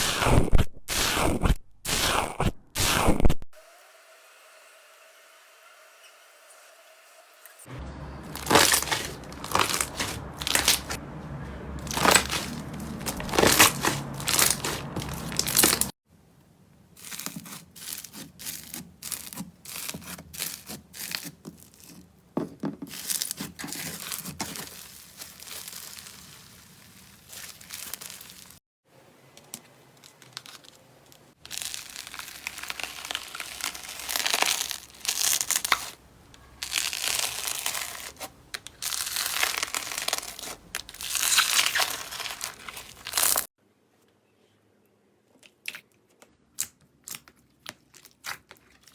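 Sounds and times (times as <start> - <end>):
slime crackling by hand: 8.3 - 11.0, 11.8 - 15.9, 22.9 - 28.6, 30.0 - 43.5.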